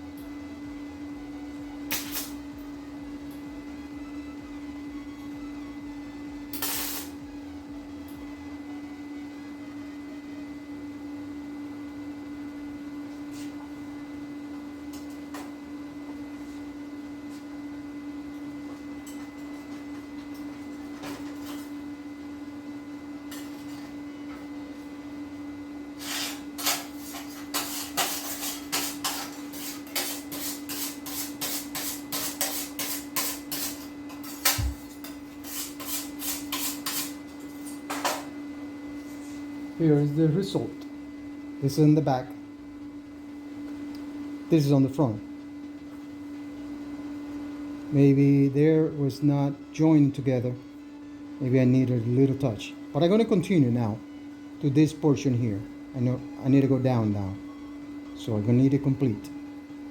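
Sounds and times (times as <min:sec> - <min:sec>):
steady hum: 0:00.0 - 0:59.9
welding arc crackling: 0:01.9 - 0:02.4, 0:06.5 - 0:07.2.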